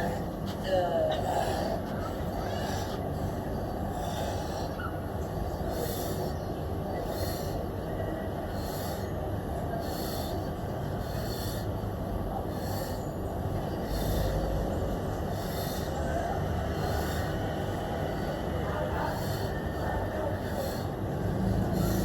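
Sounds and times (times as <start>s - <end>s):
person breathing hard: 0.0s - 22.0s
steady low rumble: 0.0s - 22.0s.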